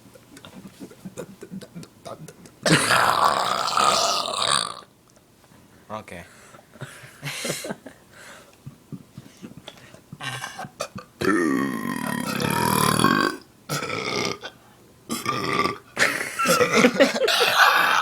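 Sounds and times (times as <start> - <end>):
loud human belching: 2.6 - 4.9, 10.8 - 18.0.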